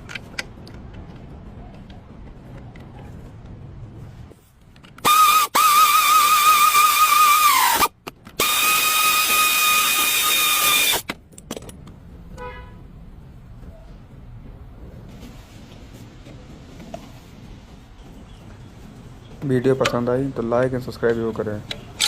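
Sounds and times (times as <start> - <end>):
vehicle horn blasts: 12.4 - 12.8.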